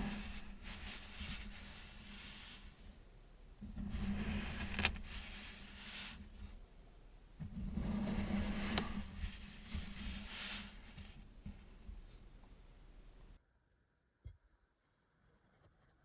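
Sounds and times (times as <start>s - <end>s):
metal tool scraping sand: 0.0s - 2.9s, 3.8s - 6.6s, 7.8s - 11.8s.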